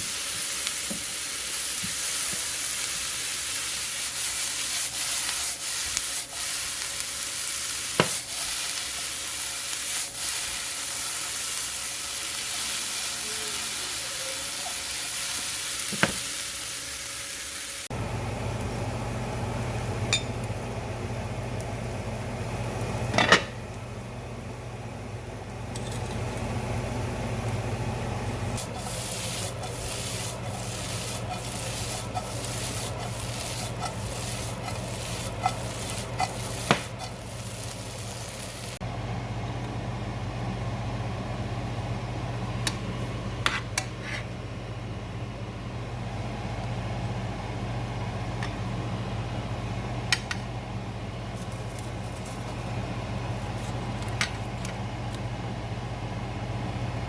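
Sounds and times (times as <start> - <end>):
steady low hum: 17.9 - 57.0
spatula scraping pan: 28.6 - 38.8.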